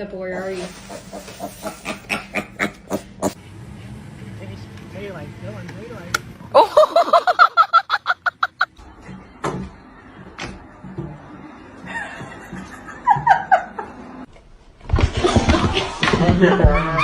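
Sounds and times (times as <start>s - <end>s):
person laughing: 1.3s - 3.4s, 6.6s - 8.8s.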